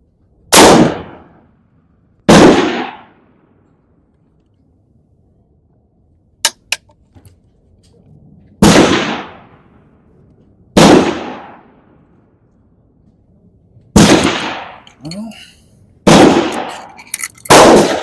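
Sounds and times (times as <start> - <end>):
loud gunshots: 0.6 - 1.2, 2.3 - 3.1, 8.6 - 9.4, 10.8 - 11.6, 14.0 - 14.8, 16.1 - 16.8, 17.5 - 18.0.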